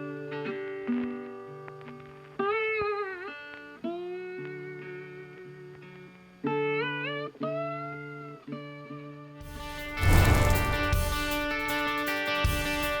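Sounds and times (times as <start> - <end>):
full background music: 9.5 - 13.0.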